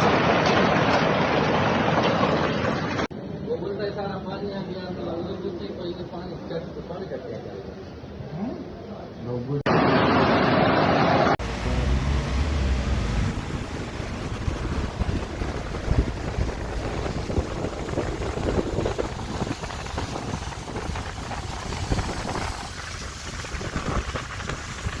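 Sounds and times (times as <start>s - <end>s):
water rushing and splashing: 0.0s - 3.1s, 9.7s - 25.0s
vehicle driving through floodwater: 11.4s - 25.0s.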